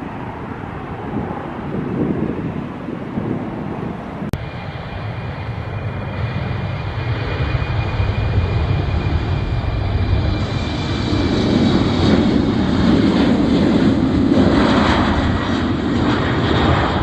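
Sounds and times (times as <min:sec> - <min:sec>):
airliner engines rumbling: 0:00.0 - 0:17.0
high engine whine: 0:04.2 - 0:17.0.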